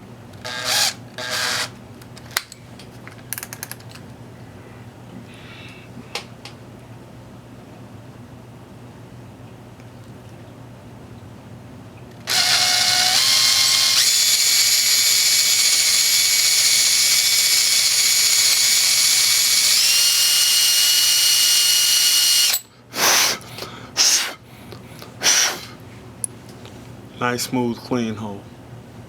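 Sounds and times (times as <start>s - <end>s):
power drill whining: 0.4s - 1.7s, 12.3s - 22.6s.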